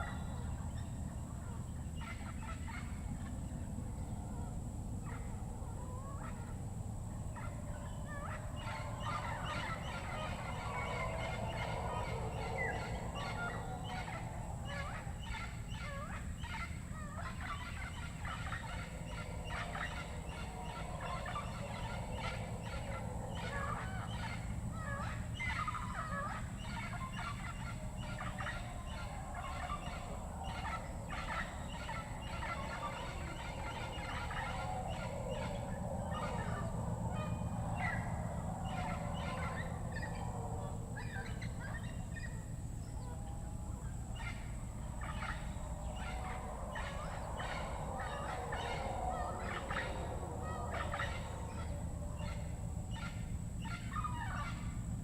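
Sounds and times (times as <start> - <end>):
animal calls and chatters: 0.0 - 55.0
high-pitched whine: 0.0 - 55.0
low background rumble: 0.0 - 55.0.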